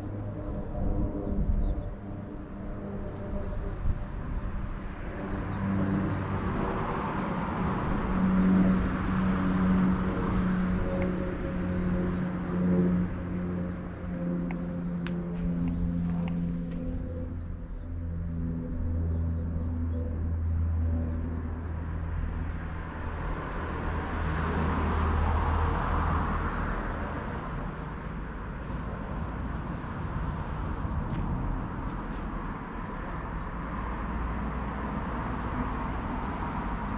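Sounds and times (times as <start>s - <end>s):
low engine hum: 0.0s - 36.9s
road vehicle passing: 2.4s - 36.9s
vehicle passing: 3.4s - 18.8s.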